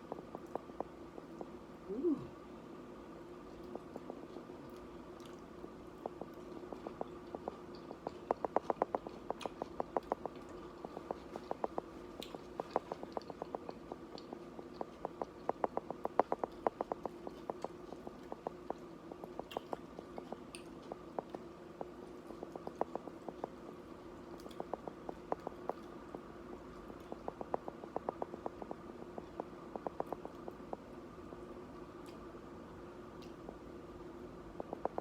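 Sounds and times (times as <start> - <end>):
chewing crunchy tortilla chips: 3.3 - 30.8.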